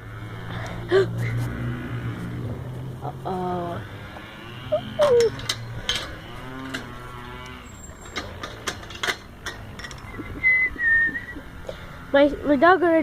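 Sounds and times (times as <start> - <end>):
low drawn-out animal call: 3.0 - 5.4
sharp clicks and knocks: 5.0 - 10.4.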